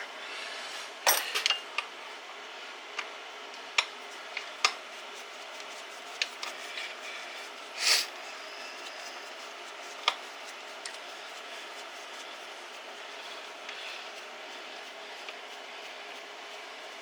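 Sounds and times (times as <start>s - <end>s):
metal tools clinking: 1.1s - 1.6s.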